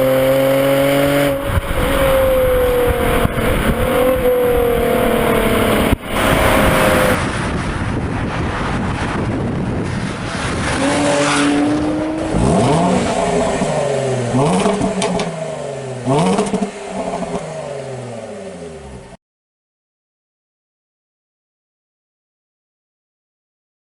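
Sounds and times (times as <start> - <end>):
car engine idling and revving: 0.0 - 9.1, 9.8 - 19.2
exhaust cracks: 1.2 - 19.2.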